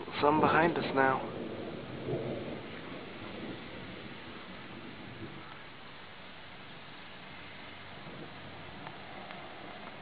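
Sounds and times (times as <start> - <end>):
rain hissing: 0.0 - 10.0.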